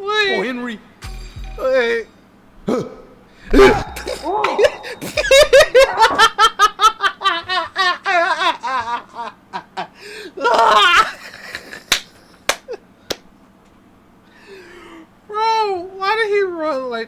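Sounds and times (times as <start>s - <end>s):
man laughing: 3.5s - 12.0s.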